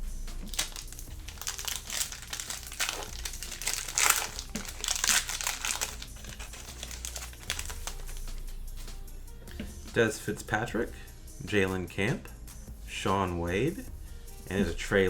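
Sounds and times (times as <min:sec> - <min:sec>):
plastic foil wrapper crinkling: 0:00.4 - 0:08.4.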